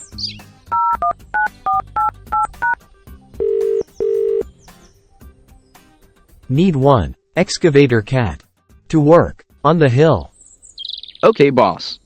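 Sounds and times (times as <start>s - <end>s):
telephone keypad beeps: 0.7s - 2.8s, 3.4s - 4.4s
telephone ringing tones: 3.4s - 4.4s.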